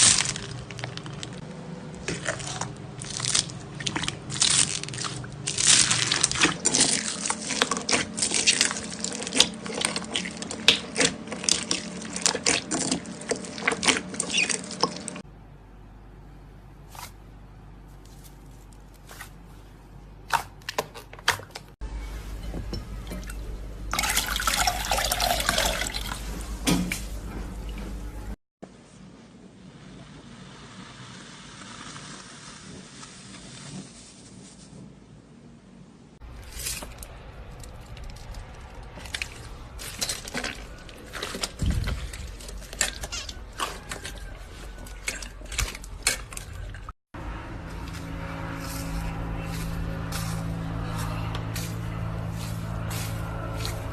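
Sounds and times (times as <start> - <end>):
slime squelching: 0.0 - 15.2, 36.2 - 46.9.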